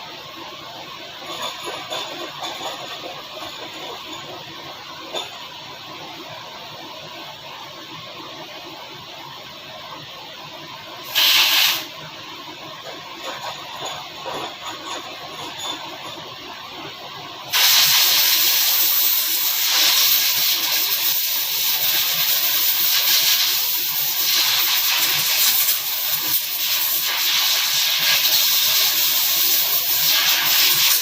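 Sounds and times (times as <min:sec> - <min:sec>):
loud pressurised jet hiss: 0:11.1 - 0:11.9, 0:17.5 - 0:21.3.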